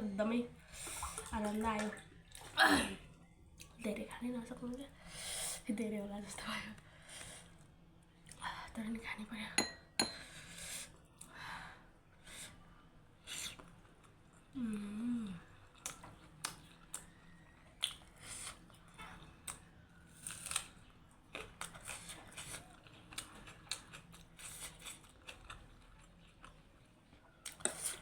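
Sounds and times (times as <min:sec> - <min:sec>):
chewing with mouth clicks: 0:15.5 - 0:28.0.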